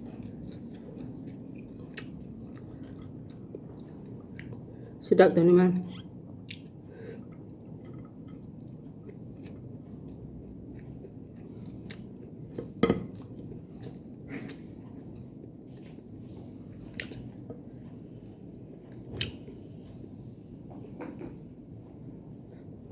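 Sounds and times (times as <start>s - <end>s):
person chewing: 0.0s - 4.8s, 6.3s - 19.6s.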